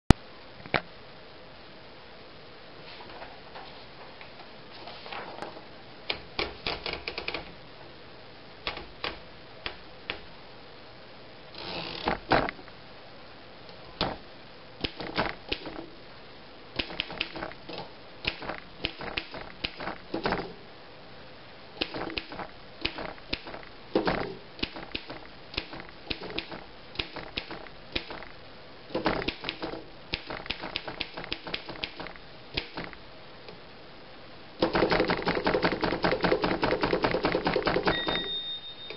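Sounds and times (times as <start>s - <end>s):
manual typewriter typing: 6.4s - 7.5s, 34.6s - 38.3s.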